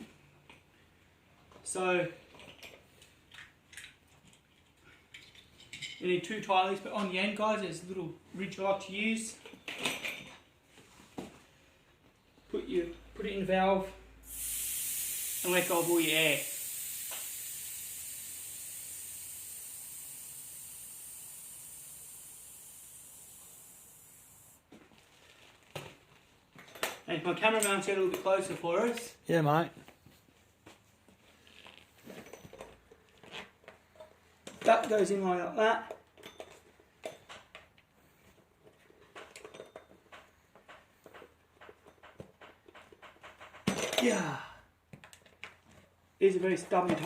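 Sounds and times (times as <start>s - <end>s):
air hissing from tyre valve: 14.2s - 24.6s.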